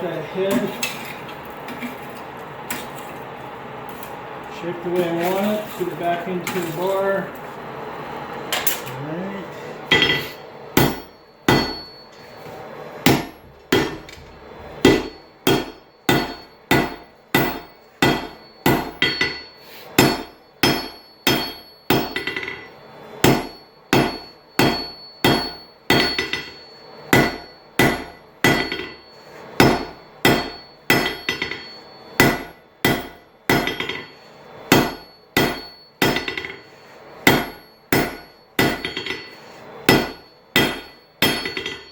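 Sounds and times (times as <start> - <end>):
hammer striking metal on anvil: 9.9 - 12.1, 13.0 - 14.1, 14.8 - 41.9.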